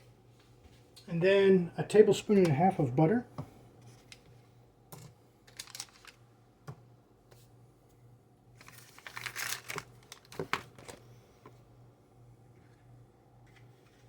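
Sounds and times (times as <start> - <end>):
faint steady hum: 0.0 - 14.0
packaging crinkling: 5.5 - 6.2, 8.6 - 11.0.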